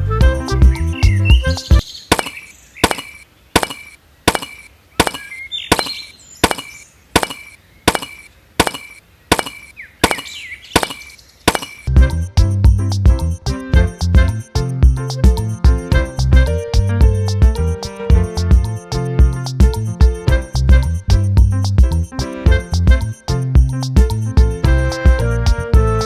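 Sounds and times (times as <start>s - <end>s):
sharp ringing knocks: 2.1s - 11.9s.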